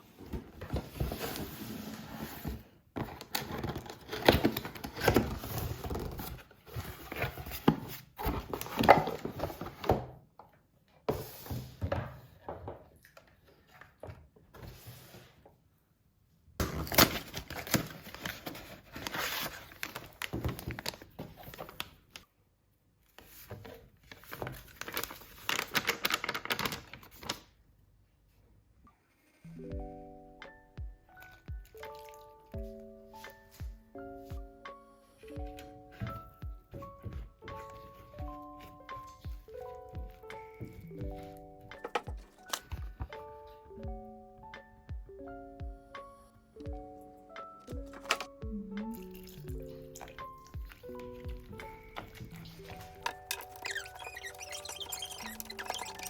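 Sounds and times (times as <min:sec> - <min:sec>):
packaging crinkling and tearing: 0:03.1 - 0:09.8, 0:16.6 - 0:22.2, 0:24.1 - 0:27.5, 0:48.9 - 0:56.0.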